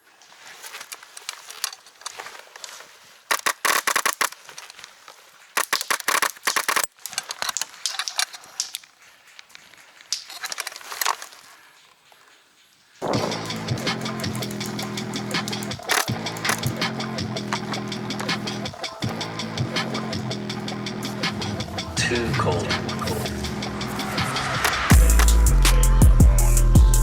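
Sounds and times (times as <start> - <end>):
rapid airsoft gunfire: 3.3 - 4.4, 5.6 - 6.9, 13.0 - 21.9
background music: 13.0 - 27.0.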